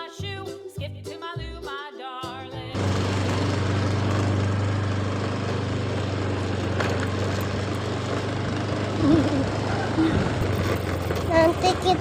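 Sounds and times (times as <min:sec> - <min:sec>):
vehicle engine running: 0:02.7 - 0:12.0
road noise: 0:02.8 - 0:12.0.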